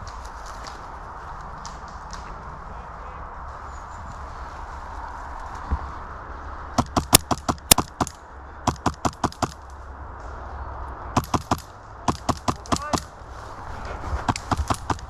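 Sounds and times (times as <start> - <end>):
airsoft gun shots: 6.8 - 9.6, 11.2 - 13.1, 14.3 - 15.0.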